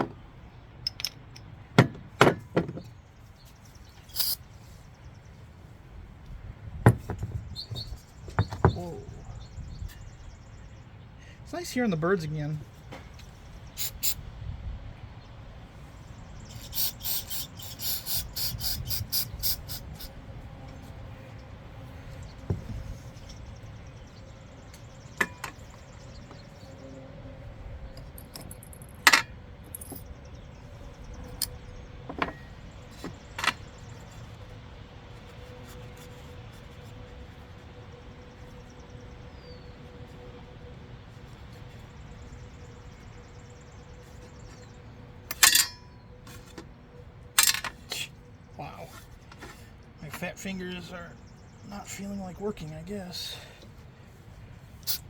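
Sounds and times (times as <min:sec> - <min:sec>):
metal parts and tools clinking: 0:00.8 - 0:02.4, 0:04.1 - 0:04.4, 0:25.2 - 0:25.7, 0:28.0 - 0:30.1, 0:45.3 - 0:46.4, 0:47.4 - 0:47.8.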